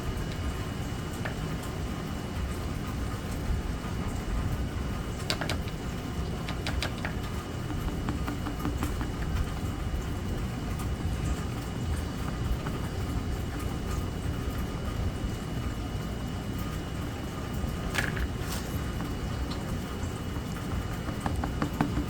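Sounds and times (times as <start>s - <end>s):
light taps: 5.2s - 9.7s, 18.0s - 22.0s.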